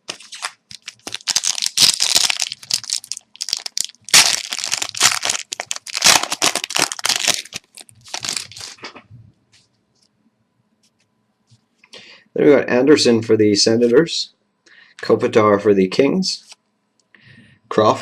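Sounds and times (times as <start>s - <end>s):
wrapper crinkling and tearing: 0.0s - 8.8s.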